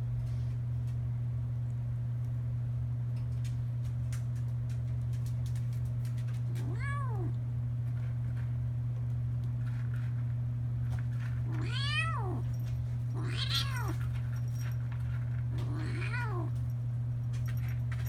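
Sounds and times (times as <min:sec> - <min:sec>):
steady low hum: 0:00.0 - 0:18.0
kitten meowing: 0:06.6 - 0:07.4, 0:11.5 - 0:12.4, 0:13.2 - 0:14.0, 0:15.6 - 0:16.5.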